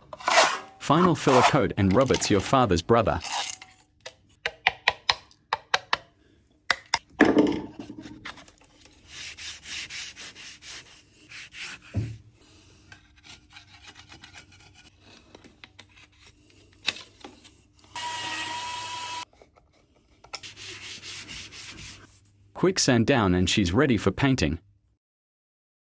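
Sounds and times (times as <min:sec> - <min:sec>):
filling knife scraping filler: 0:00.0 - 0:03.8, 0:07.9 - 0:16.7.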